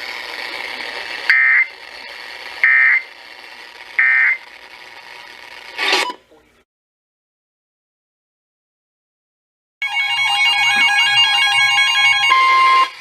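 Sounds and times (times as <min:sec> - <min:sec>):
buzzy data tone bursts: 0:00.0 - 0:05.9
radio crackle: 0:00.0 - 0:06.3
radio hiss: 0:00.0 - 0:06.6.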